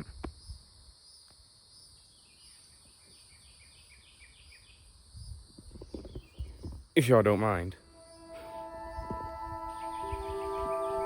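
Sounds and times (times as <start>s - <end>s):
wind rumble on microphone: 5.1s - 6.9s
high-pitched insect drone: 7.8s - 11.0s.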